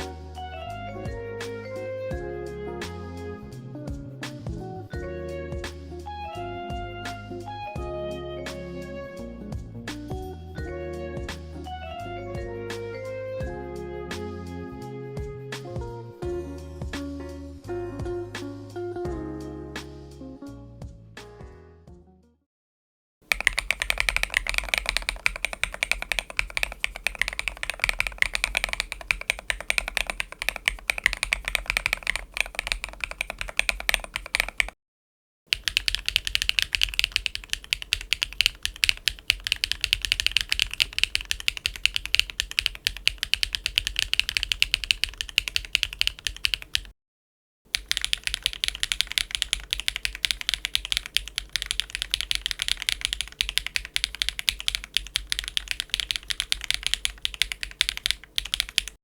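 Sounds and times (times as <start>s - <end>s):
mechanical keyboard typing: 23.3s - 34.8s, 35.5s - 46.9s, 47.7s - 59.0s.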